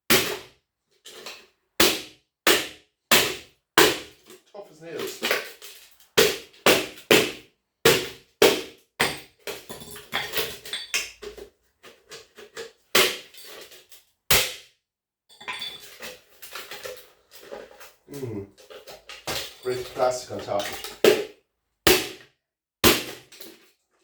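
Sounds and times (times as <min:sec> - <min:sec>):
metal and plastic rattling: 0:15.6 - 0:21.1.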